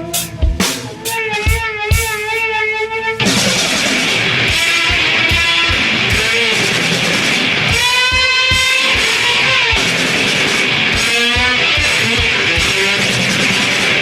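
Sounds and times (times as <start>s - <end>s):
distorted electric guitar: 0.0s - 14.0s
drums: 0.0s - 14.0s
kick drum thumping: 7.7s - 9.9s, 11.0s - 12.8s.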